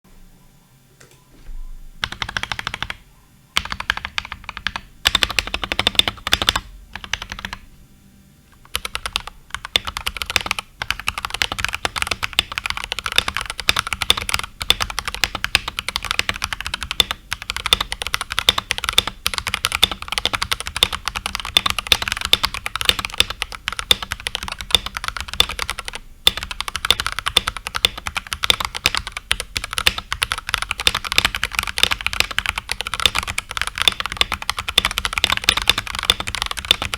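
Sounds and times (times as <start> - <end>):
mechanical keyboard typing: 2.0 - 3.0, 3.6 - 7.6, 8.6 - 36.9.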